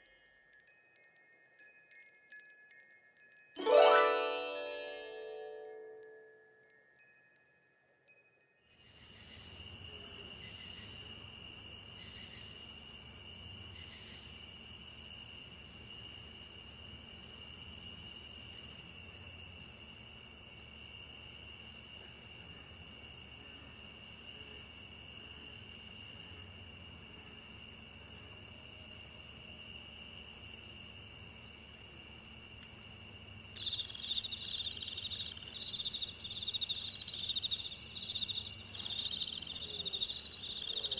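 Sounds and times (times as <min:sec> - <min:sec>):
wind chime tones: 0:00.0 - 0:09.2
loud chirping insect: 0:08.7 - 0:16.2, 0:21.7 - 0:40.9
high cricket-like trill: 0:33.5 - 0:40.9.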